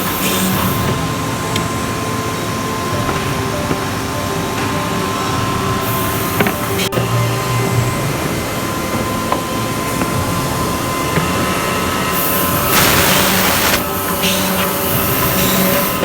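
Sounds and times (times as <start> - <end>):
loud air hiss: 12.2 - 14.5
drilling machine humming: 12.7 - 13.9.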